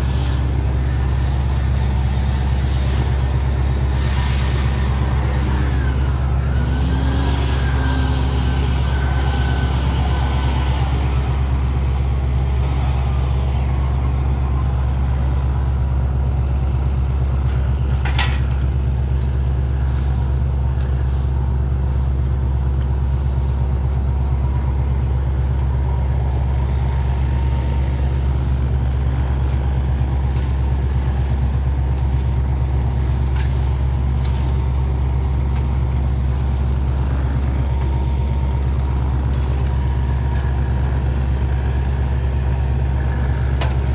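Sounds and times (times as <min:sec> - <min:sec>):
heavy engine droning: 0:00.0 - 0:43.9.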